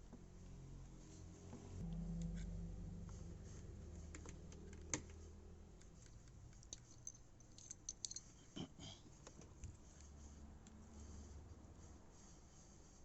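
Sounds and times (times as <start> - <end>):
low hum: 0.0 - 6.4.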